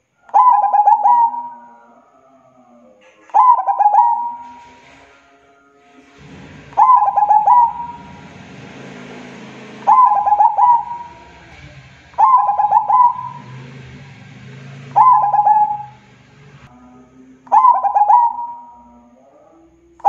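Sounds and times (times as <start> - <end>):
dove cooing: 0.0 - 5.0, 6.2 - 8.2, 9.9 - 13.8, 14.6 - 16.0, 17.4 - 19.1.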